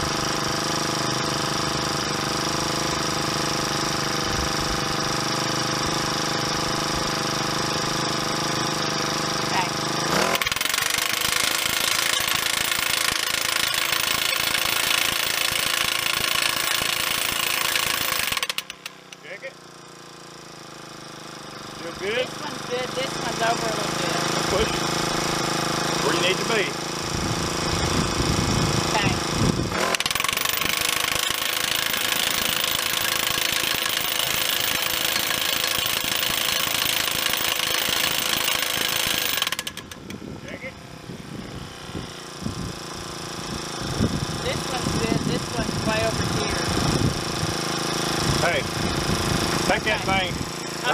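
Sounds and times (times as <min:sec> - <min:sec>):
post driver hammering: 0:10.2 - 0:19.2, 0:29.8 - 0:40.2.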